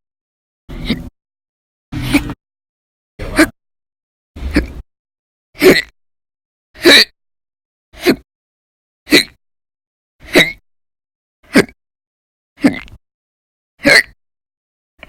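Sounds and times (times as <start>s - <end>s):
woman hiccuping: 10.3s - 10.6s.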